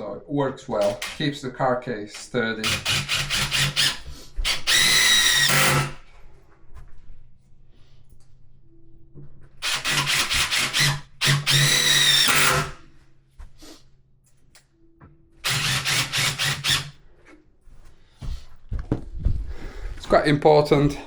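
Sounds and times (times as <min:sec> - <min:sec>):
power drill driving screws: 0:00.8 - 0:01.3, 0:02.6 - 0:06.0, 0:09.6 - 0:12.8, 0:15.4 - 0:17.0.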